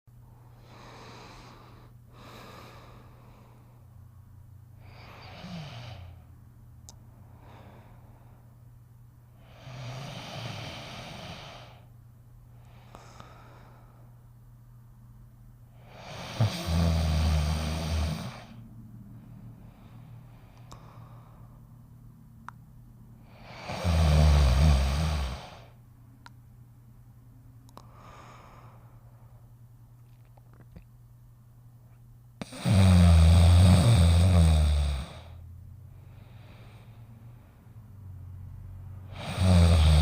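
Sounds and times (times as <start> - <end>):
faint low hum: 0.1 - 40.0
dog snoring: 4.8 - 6.2, 9.4 - 11.8, 15.8 - 18.6, 23.2 - 25.8, 32.4 - 35.4, 39.0 - 40.0.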